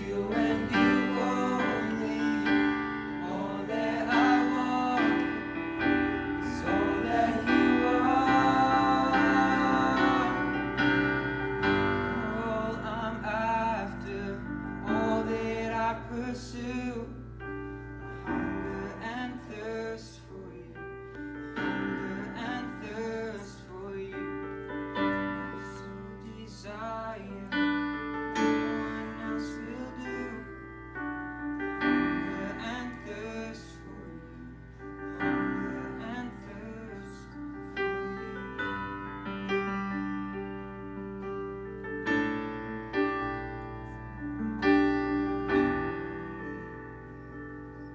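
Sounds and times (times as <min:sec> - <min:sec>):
person singing: 0:00.0 - 0:17.3, 0:21.5 - 0:30.9
slow piano song: 0:00.0 - 0:47.9.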